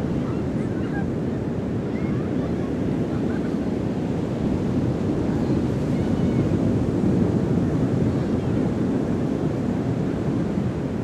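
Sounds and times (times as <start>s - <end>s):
sea waves washing on beach: 0.0s - 11.0s
distant children's voices: 1.8s - 3.7s, 5.2s - 6.6s, 7.5s - 8.8s.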